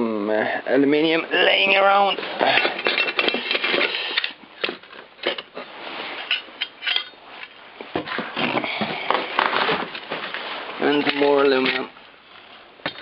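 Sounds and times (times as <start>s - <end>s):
scrap metal clinking: 2.0s - 7.6s, 10.4s - 11.9s.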